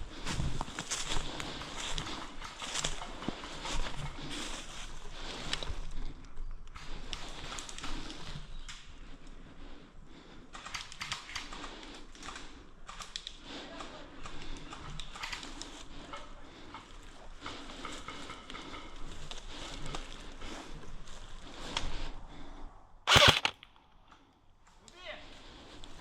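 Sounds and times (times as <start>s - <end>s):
rustling of gear: 23.1s - 23.7s.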